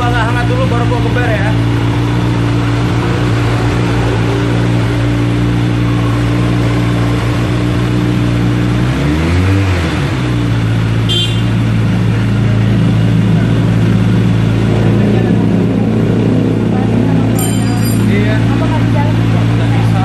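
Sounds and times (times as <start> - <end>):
motorcycle engine idling: 10.5 - 20.0
throttle blip: 17.4 - 18.2.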